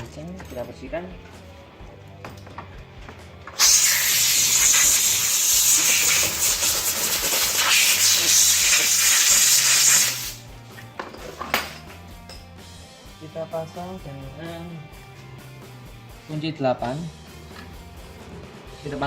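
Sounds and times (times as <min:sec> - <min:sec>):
cleaning spray hissing: 0:03.6 - 0:10.4.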